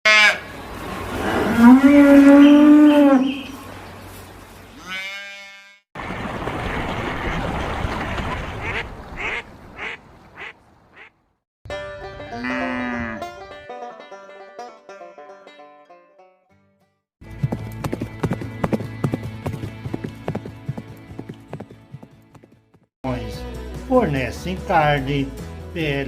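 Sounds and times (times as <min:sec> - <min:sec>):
cow mooing: 0:01.2 - 0:03.4, 0:12.3 - 0:13.4.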